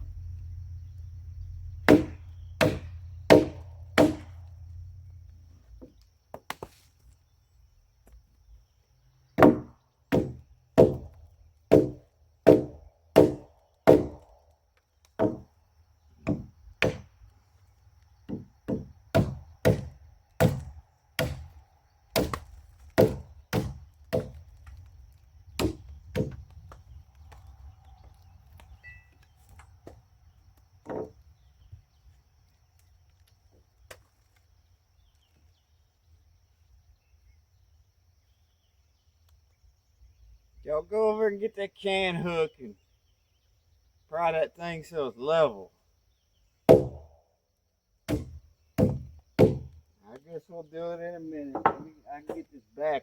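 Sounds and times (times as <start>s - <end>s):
low steady hum: 0.0s - 5.5s
chopping into a log: 1.9s - 4.4s, 9.4s - 14.3s, 15.2s - 15.5s, 16.2s - 17.1s, 18.3s - 24.8s, 25.6s - 27.4s, 46.7s - 47.2s, 48.1s - 49.8s.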